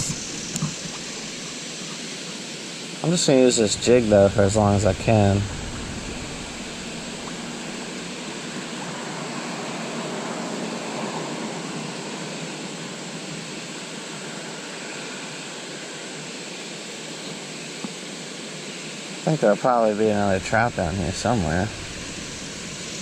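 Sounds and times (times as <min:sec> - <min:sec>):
stream water flowing: 0:00.0 - 0:11.1, 0:19.8 - 0:23.0.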